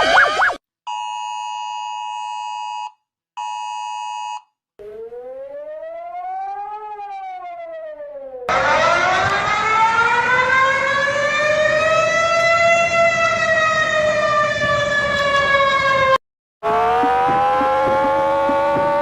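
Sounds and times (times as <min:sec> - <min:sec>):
warning siren winding up: 0:00.0 - 0:00.6, 0:04.8 - 0:19.0.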